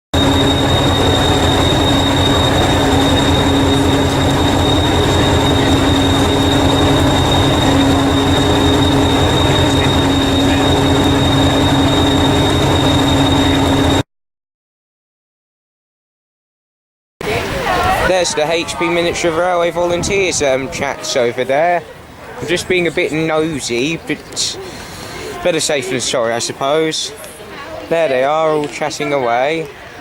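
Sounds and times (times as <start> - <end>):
high-pitched whine: 0.1 - 14.0
train rumble: 0.1 - 14.0, 17.3 - 25.6.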